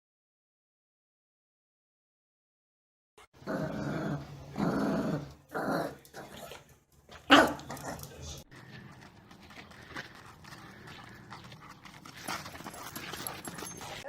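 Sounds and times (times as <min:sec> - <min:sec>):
dog growling: 0:03.4 - 0:06.6, 0:07.3 - 0:09.0, 0:09.6 - 0:14.0
dog barking sharply: 0:07.3 - 0:07.7.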